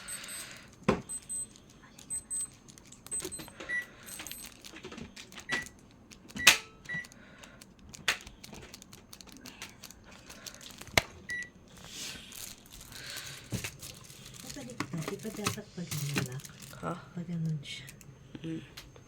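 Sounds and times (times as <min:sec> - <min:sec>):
clicks and knocks of handled objects: 0:00.6 - 0:11.2, 0:12.3 - 0:16.8.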